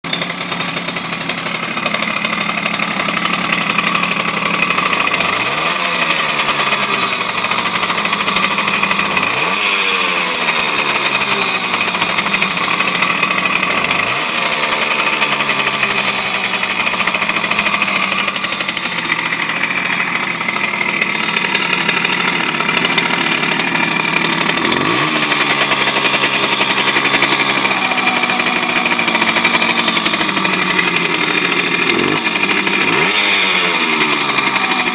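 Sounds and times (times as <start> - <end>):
moped engine revving: 0.0 - 34.9.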